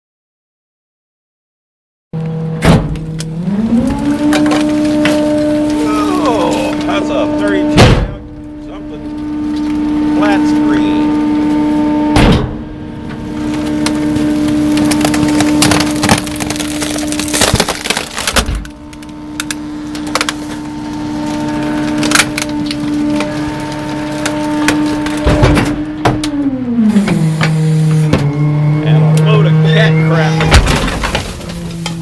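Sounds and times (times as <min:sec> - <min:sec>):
trash cracking and snapping: 0:02.2 - 0:11.8, 0:12.4 - 0:28.3, 0:30.2 - 0:32.0
hydraulic packer humming: 0:02.2 - 0:32.0
heavy crunches: 0:13.3 - 0:25.6.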